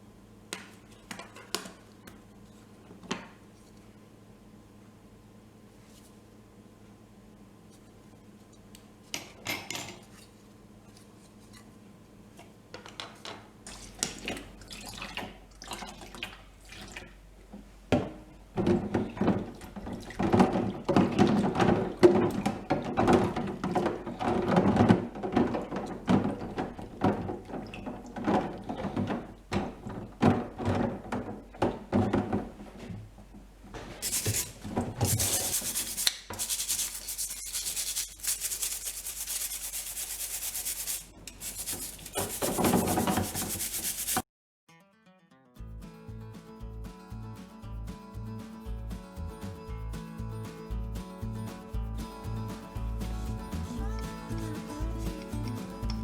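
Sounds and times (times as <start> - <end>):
scrubbing plastic remote: 34.0 - 44.2
tap water running: 34.0 - 44.2.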